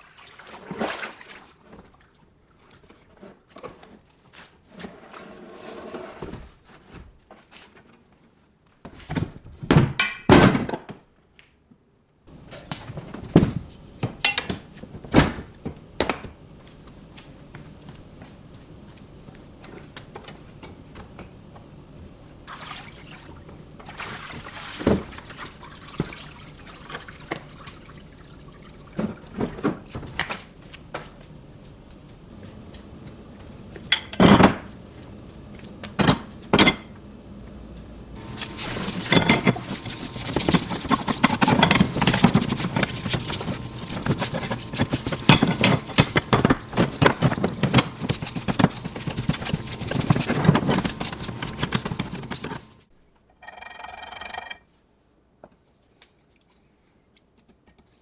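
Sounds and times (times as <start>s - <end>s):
liquid splashing and sloshing: 0.0s - 3.0s, 22.4s - 29.9s, 38.2s - 52.8s
hard parts clattering: 38.2s - 52.8s.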